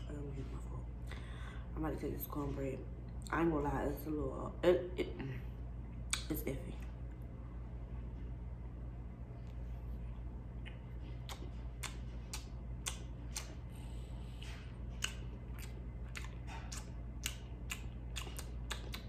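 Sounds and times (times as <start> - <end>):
person chewing with wet mouth clicks: 10.6 - 19.0.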